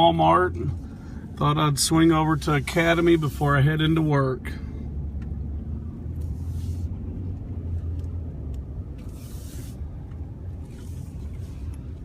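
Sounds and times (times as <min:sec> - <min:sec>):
car engine and road rumble: 0:00.0 - 0:12.0
short hissing swells: 0:09.0 - 0:09.9.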